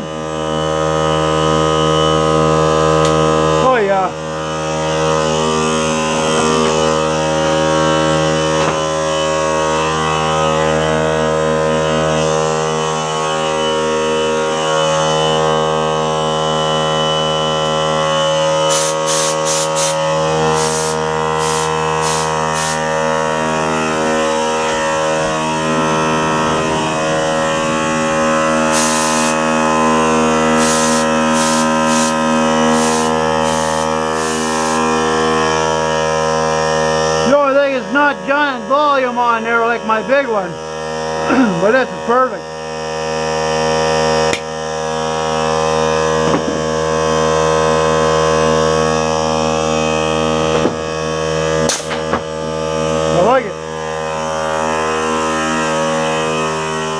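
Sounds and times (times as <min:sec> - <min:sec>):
air compressor pump humming: 0:00.0 - 0:56.9
air hissing bursts: 0:18.6 - 0:22.9, 0:28.6 - 0:29.6, 0:30.4 - 0:34.9.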